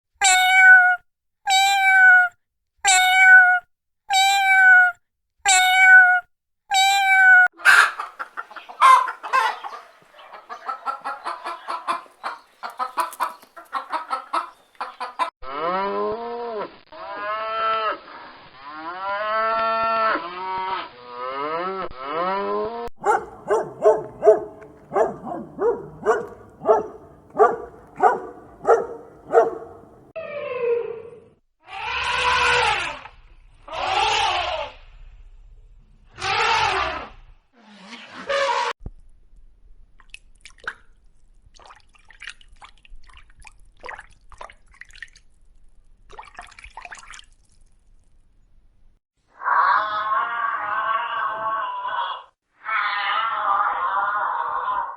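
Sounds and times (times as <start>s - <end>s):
poultry calling: 7.5s - 15.3s, 23.0s - 30.0s.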